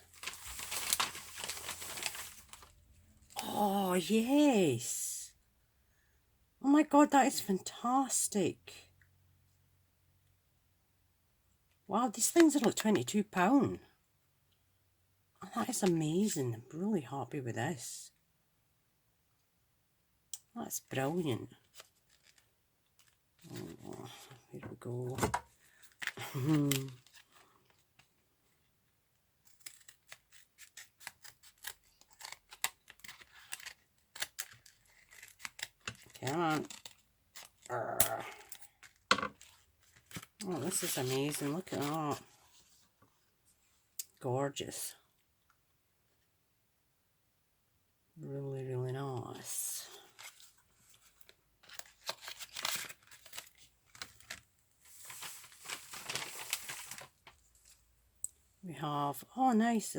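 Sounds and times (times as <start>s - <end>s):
packaging being opened: 0.1s - 2.7s, 21.6s - 24.4s, 25.3s - 28.1s, 29.5s - 42.0s, 50.1s - 57.8s.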